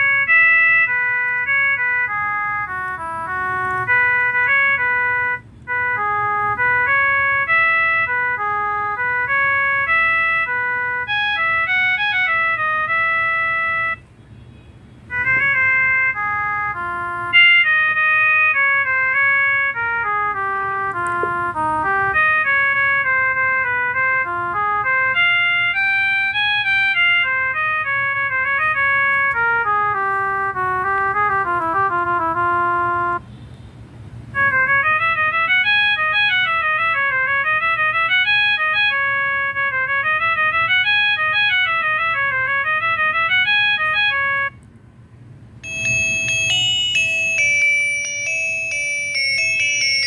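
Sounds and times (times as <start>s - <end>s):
electronic phone ringtone melody: 15.1s - 23.0s, 24.3s - 27.3s, 45.6s - 50.0s.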